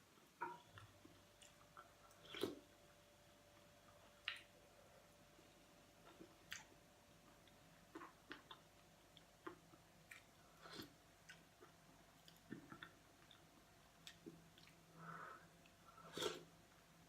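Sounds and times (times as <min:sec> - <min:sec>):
faint chewing: 0:00.4 - 0:04.6, 0:06.0 - 0:16.5
soft mouth clicks and smacks: 0:04.2 - 0:04.5, 0:06.1 - 0:06.7, 0:08.0 - 0:14.8.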